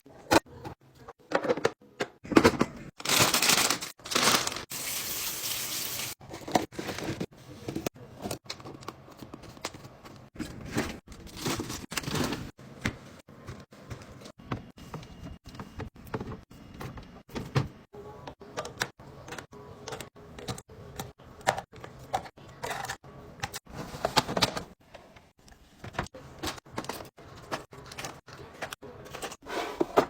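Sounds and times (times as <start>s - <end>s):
packaging rustling: 3.0s - 5.0s.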